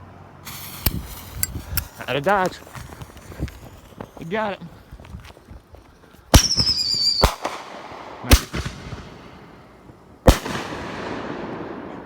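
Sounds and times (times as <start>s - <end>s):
firework shell whistle: 0.5s - 4.6s, 6.4s - 7.5s
firework bangs: 0.5s - 5.4s, 6.3s - 9.4s, 10.2s - 12.0s
crackling echo: 0.5s - 12.0s.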